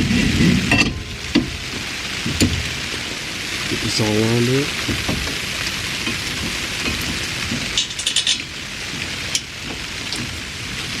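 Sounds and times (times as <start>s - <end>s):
steady hiss: 0.0s - 11.0s
metal clicks and clinks: 7.7s - 8.6s.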